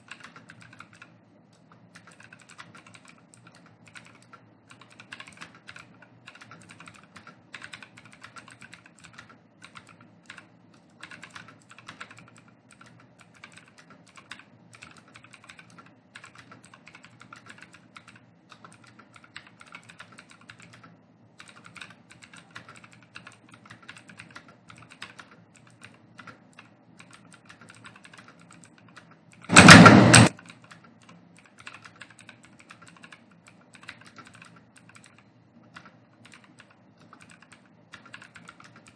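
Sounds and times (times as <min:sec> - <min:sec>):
fast typing on keyboard: 0:00.0 - 0:38.9
loud burst of noise: 0:29.5 - 0:30.3.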